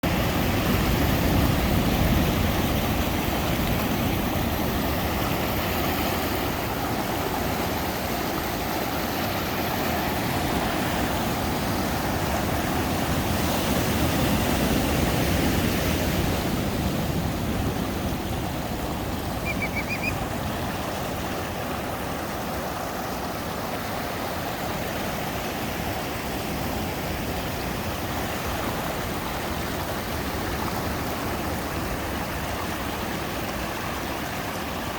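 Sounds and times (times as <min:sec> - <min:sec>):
ocean surf washing: 0:00.0 - 0:34.9
faint high chirp: 0:19.4 - 0:20.2.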